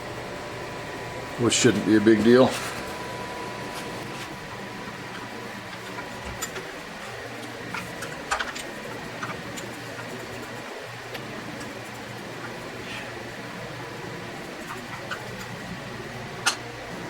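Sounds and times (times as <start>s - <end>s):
air compressor humming: 0.0s - 17.0s.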